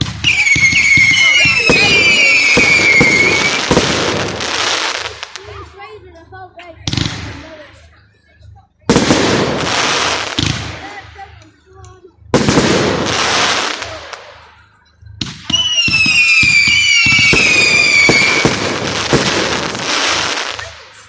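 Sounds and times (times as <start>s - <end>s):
firework whistles: 0.0s - 5.5s, 12.5s - 21.0s
firework bangs and crackles: 0.0s - 21.0s.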